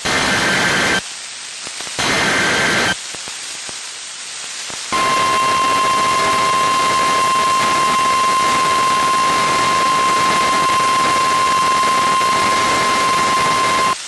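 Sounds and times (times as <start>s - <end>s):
radio static: 0.0s - 1.0s, 1.7s - 3.1s, 4.7s - 14.0s
rasping data bursts: 2.0s - 3.0s, 4.9s - 14.0s
steady warning alarm tone: 4.9s - 14.0s.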